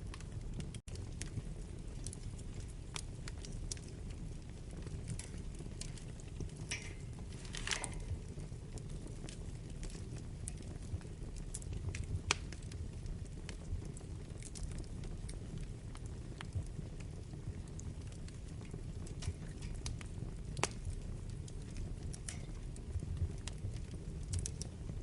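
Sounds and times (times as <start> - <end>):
wood fire crackling: 0.0 - 25.0
fire hissing: 4.6 - 8.9.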